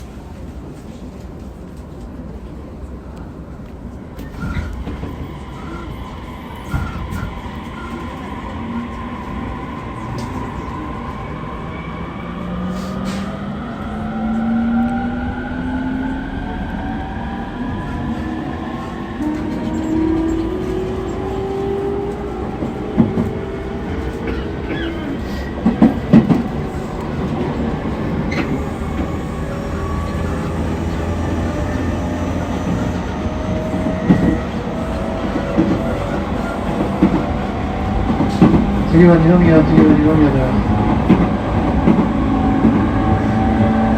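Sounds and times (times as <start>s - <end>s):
wheel and rail rumble: 0.0s - 43.9s.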